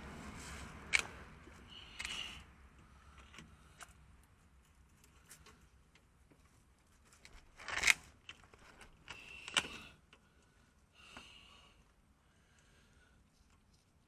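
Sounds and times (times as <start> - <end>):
scrape: 0.0 - 2.5.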